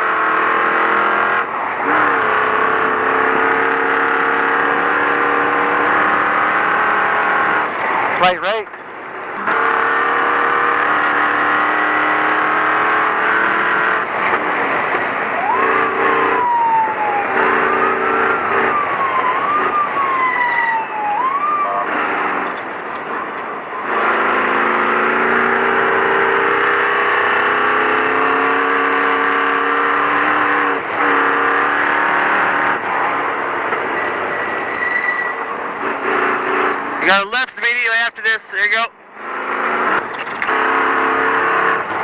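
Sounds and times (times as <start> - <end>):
truck engine whining: 0.0 - 42.0.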